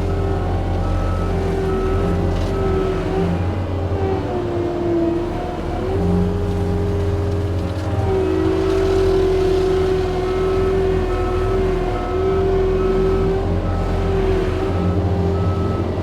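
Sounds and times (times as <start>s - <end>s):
diesel engine drone: 0.0s - 16.0s.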